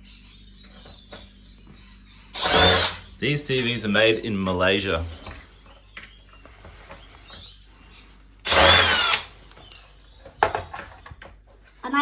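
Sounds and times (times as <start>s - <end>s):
electric screwdriver running: 2.4s - 3.0s, 8.5s - 9.4s.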